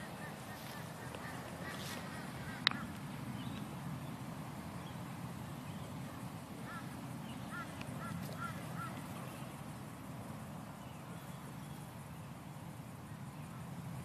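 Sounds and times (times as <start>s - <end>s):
bird honking calls: 0.0s - 3.0s, 6.6s - 9.2s.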